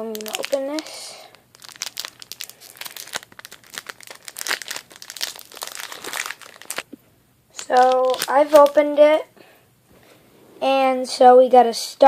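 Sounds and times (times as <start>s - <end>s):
foil wrapper tearing and crinkling: 0.0s - 6.9s, 7.6s - 8.8s.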